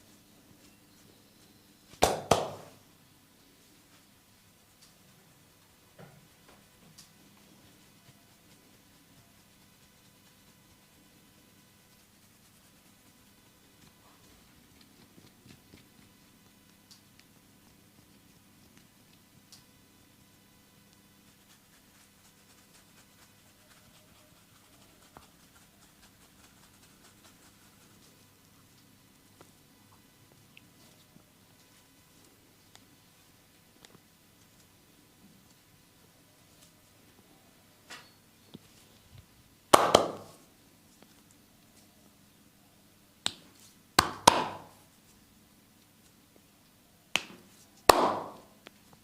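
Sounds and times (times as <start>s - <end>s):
hand strikes of a massage: 1.9s - 2.8s, 39.8s - 40.4s, 44.0s - 44.8s, 47.2s - 48.5s
hands rubbing oiled skin: 7.4s - 19.5s, 21.2s - 28.2s.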